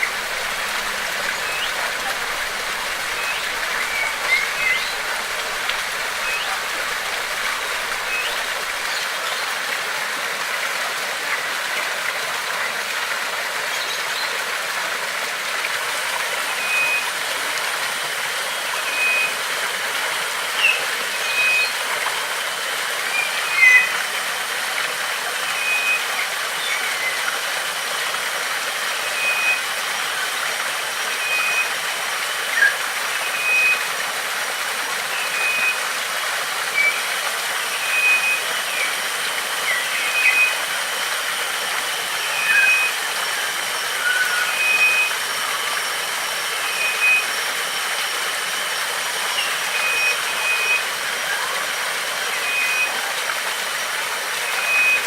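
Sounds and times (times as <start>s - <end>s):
bird repeating high note: 0.0s - 8.8s
birds chirping: 0.0s - 9.4s, 20.4s - 21.9s, 23.1s - 24.0s, 39.6s - 40.6s, 42.2s - 43.1s
stream rushing: 0.0s - 55.0s.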